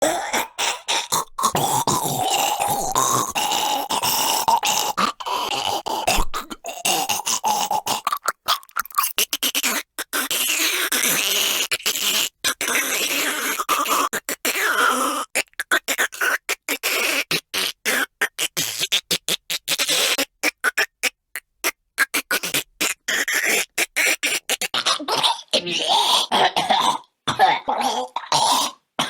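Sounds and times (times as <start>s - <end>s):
person choking and gagging: 0.0s - 29.0s.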